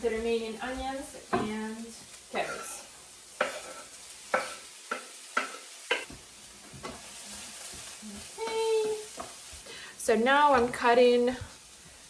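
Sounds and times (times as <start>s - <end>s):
vegetables sizzling in a hot pan: 0.0s - 12.0s
utensil knocking against pan: 4.4s - 6.2s.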